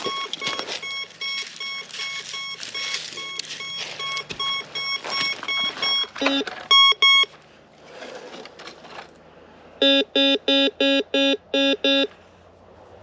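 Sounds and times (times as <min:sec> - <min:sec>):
metal detector short beeps: 0:00.0 - 0:07.3, 0:09.8 - 0:12.1
rustling noise: 0:00.0 - 0:09.2.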